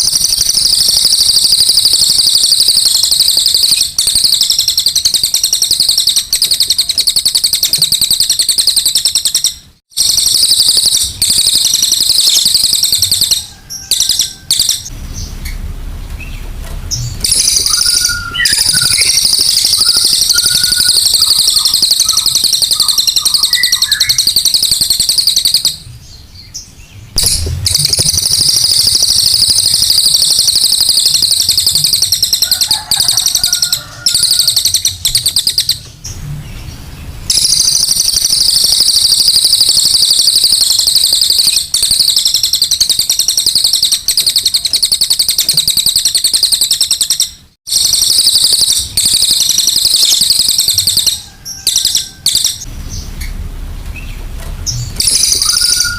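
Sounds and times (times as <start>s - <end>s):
songbird singing rapid high trill: 17.2s - 26.6s, 55.0s - 55.9s.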